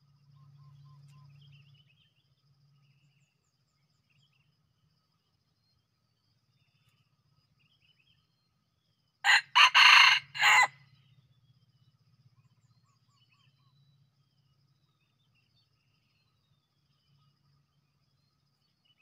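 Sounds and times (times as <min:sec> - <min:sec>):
rooster crowing: 0:09.3 - 0:10.8.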